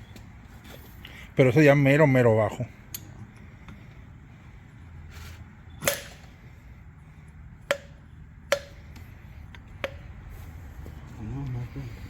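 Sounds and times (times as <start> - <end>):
metal-on-metal taps ringing: 7.6 - 9.0, 9.8 - 10.1.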